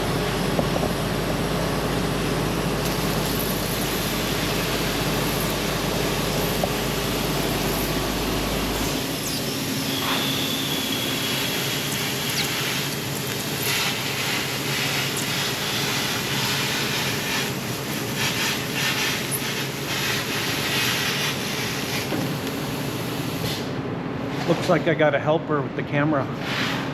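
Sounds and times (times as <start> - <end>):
laser cutter hissing through steel: 2.8 - 23.7.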